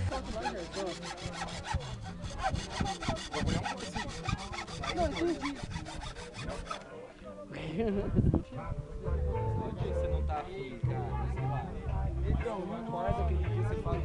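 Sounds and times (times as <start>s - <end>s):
hand saw cutting bamboo: 0.0s - 6.9s.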